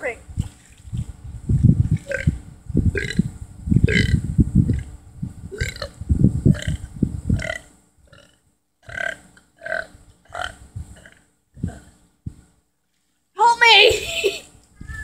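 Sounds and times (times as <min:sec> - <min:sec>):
person burping: 0:02.1 - 0:02.3, 0:03.9 - 0:04.2, 0:05.6 - 0:05.9, 0:06.5 - 0:06.8.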